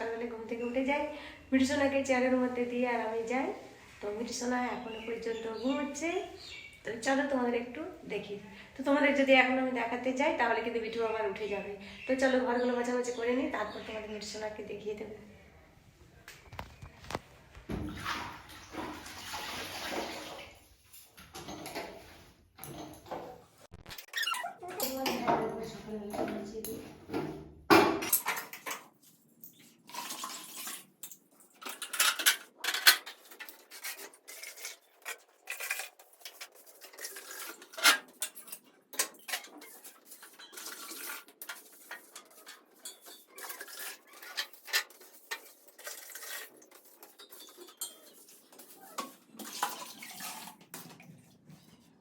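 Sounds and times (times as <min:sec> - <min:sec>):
metal kitchenware clattering: 0:24.2 - 0:50.9.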